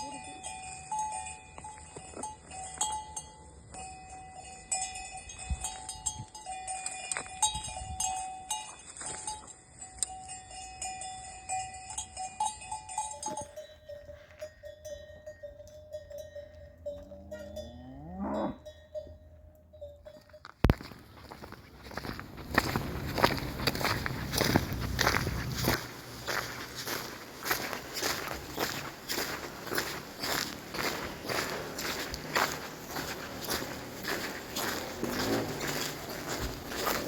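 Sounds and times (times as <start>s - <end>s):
cowbells clanking: 0.0s - 37.0s
cow mooing: 17.0s - 18.7s.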